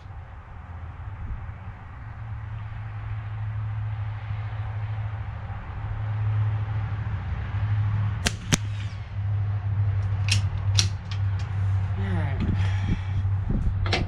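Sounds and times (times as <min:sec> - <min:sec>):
rifle bolt clicks: 0:08.2 - 0:08.8, 0:10.3 - 0:11.2
rifle shot: 0:08.2 - 0:09.0
steady low hum: 0:08.2 - 0:13.8.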